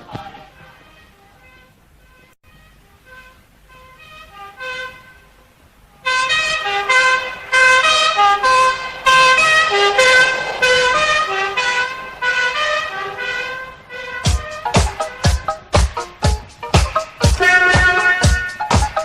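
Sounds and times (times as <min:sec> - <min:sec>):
musical horn playing a tune: 0:00.5 - 0:05.4, 0:06.0 - 0:19.0.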